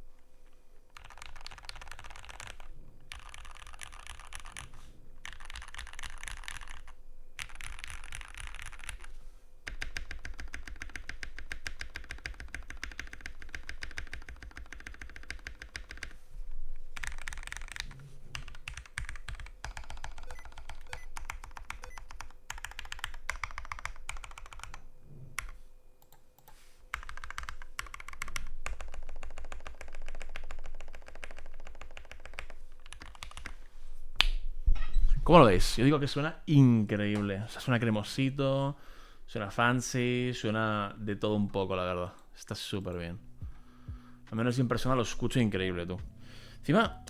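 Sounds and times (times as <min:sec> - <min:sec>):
mechanical keyboard typing: 0:00.9 - 0:16.2, 0:17.0 - 0:24.8, 0:25.4 - 0:33.6.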